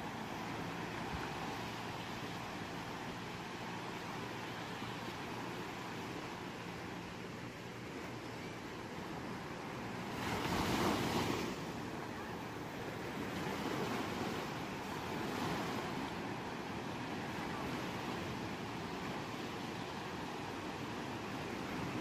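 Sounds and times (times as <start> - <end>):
sea waves washing onto shore: 0.0 - 22.0.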